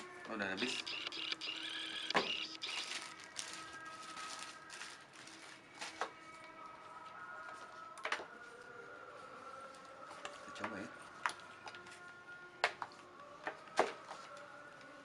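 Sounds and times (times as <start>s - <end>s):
packaging rustling: 2.7s - 6.0s.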